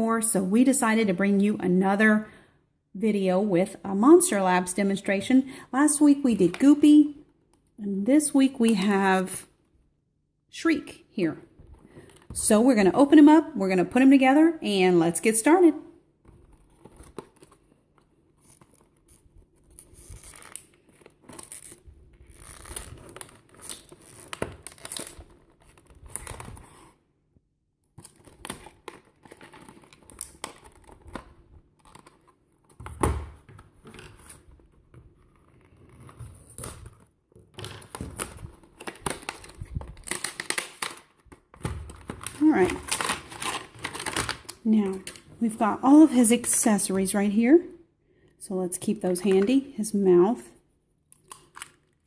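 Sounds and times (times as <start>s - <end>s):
packaging tearing and crinkling: 18.3s - 26.9s, 28.0s - 33.0s, 35.4s - 45.2s, 51.2s - 52.0s.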